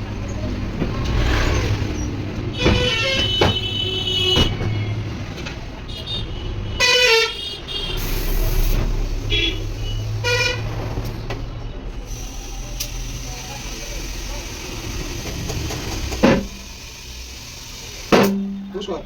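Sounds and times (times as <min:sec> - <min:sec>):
vehicle horns honking: 0:02.5 - 0:05.0, 0:05.9 - 0:10.7
sharp knocks: 0:02.6 - 0:04.8.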